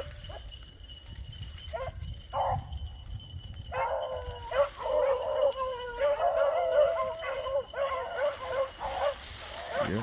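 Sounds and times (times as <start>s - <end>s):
wind rumble on microphone: 0.0s - 10.0s
beagles baying: 3.7s - 10.0s.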